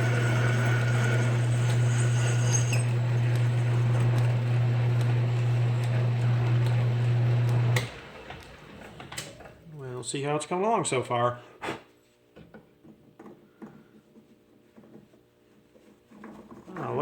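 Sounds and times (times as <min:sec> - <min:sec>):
metal lathe humming: 0:00.0 - 0:09.3.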